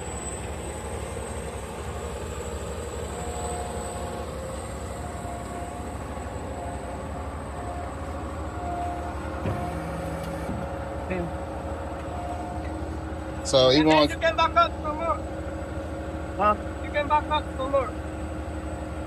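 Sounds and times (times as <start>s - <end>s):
mixer drum drive whine: 0.0s - 14.6s
diesel truck engine rumbling: 0.0s - 19.0s.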